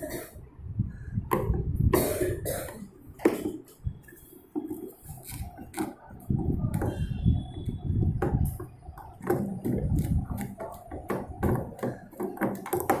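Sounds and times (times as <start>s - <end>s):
tools and parts knocking and scraping: 1.3s - 3.8s, 8.0s - 13.0s.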